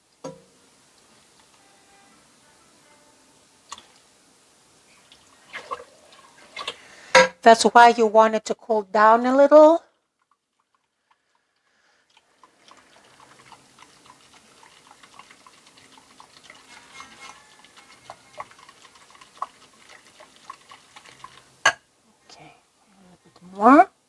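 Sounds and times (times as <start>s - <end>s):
faint liquid sounds: 0.0s - 8.0s, 8.7s - 24.0s
whisk clinking against a bowl: 13.2s - 21.4s.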